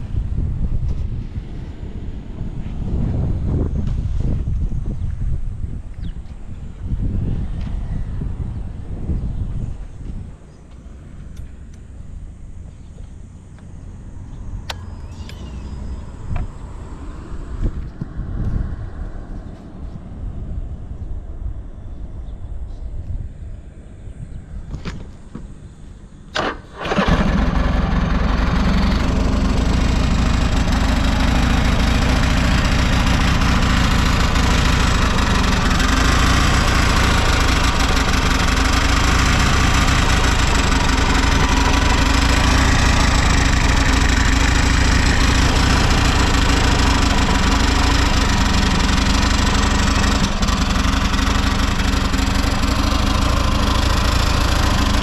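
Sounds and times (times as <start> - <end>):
motorcycle engine idling: 5.0 - 17.8, 25.8 - 55.0
motorcycle engine cranking: 26.3 - 55.0.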